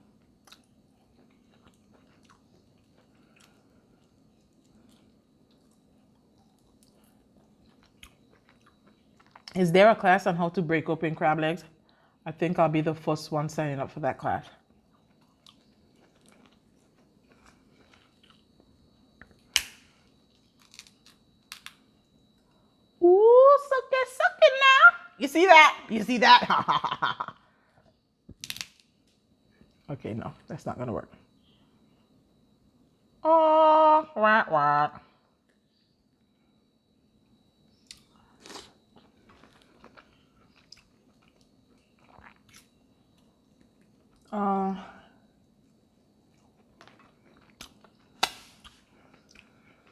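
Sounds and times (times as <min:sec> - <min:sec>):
chewing: 0:00.2 - 0:09.6, 0:14.8 - 0:19.4, 0:37.8 - 0:44.3, 0:45.5 - 0:49.9
crab shell cracking: 0:19.5 - 0:21.8, 0:28.4 - 0:28.9, 0:46.8 - 0:49.5.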